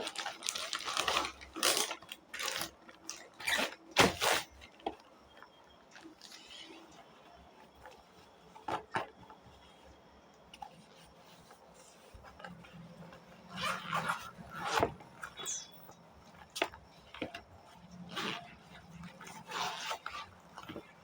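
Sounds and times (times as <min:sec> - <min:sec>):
sharp packaging clicks: 0:00.0 - 0:04.6
packaging rustling and scraping: 0:00.0 - 0:21.0.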